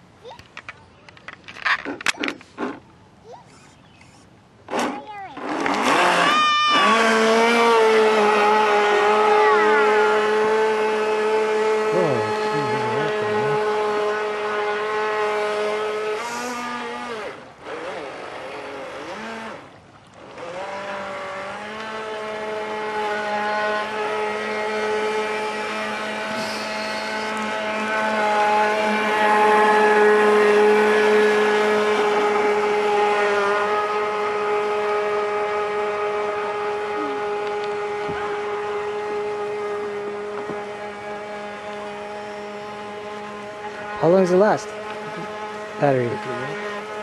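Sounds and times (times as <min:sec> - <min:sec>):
electric boat motor whining: 0:05.4 - 0:47.0.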